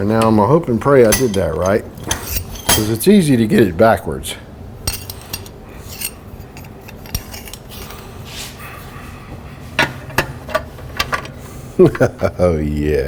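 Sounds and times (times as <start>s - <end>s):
metal tools clicking and clinking: 0.0s - 3.1s, 4.8s - 7.6s.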